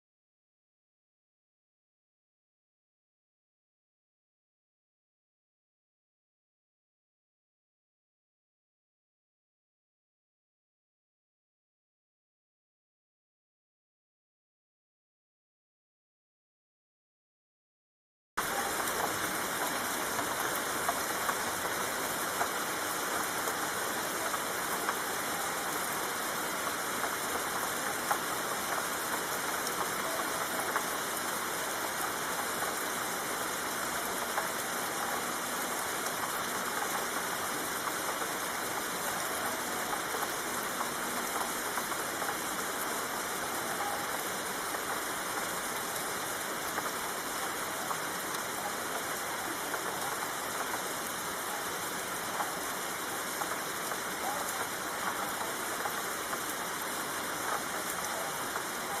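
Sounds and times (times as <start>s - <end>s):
raindrops ticking: 18.4s - 59.0s
steady rain hiss: 18.4s - 59.0s.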